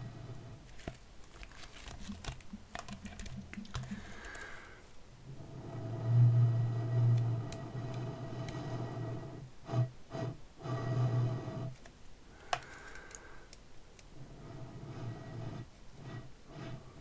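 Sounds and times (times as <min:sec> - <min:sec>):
plastic bottle crinkling: 0:00.7 - 0:04.6, 0:11.8 - 0:13.3.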